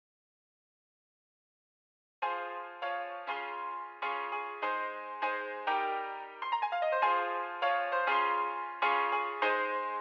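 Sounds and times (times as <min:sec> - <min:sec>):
electric piano chords: 0:02.7 - 0:10.0.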